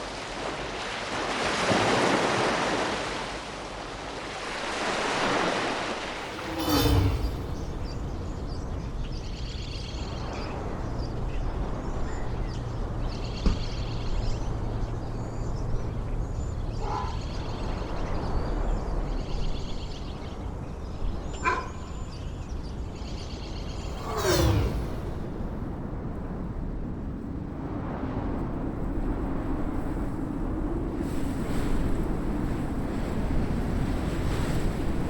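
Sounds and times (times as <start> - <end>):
sweeping whoosh: 6.1 - 8.4, 23.8 - 26.0
steady low rumble: 6.2 - 8.2.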